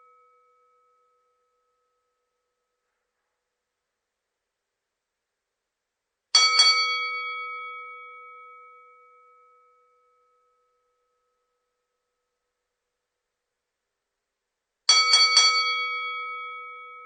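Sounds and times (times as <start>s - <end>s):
boxing ring bell ringing: 6.4s - 11.0s, 14.9s - 17.0s.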